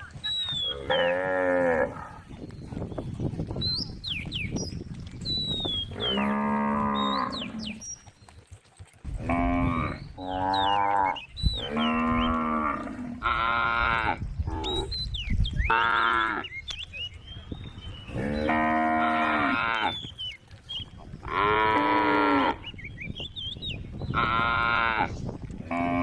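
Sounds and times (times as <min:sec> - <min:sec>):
cows mooing: 0:00.7 - 0:02.3, 0:05.9 - 0:07.8, 0:09.1 - 0:14.9, 0:15.7 - 0:16.5, 0:18.1 - 0:20.0, 0:21.2 - 0:22.6, 0:24.1 - 0:26.0.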